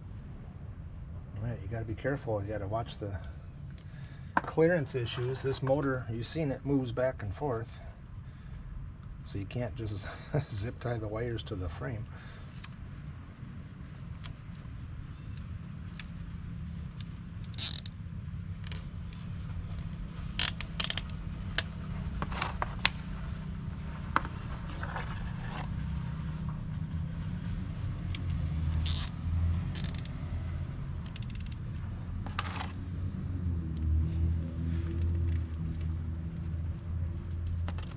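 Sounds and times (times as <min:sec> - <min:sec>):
zip ties ratcheting: 0:16.9 - 0:18.0, 0:20.4 - 0:21.8, 0:28.0 - 0:30.2, 0:31.0 - 0:31.6.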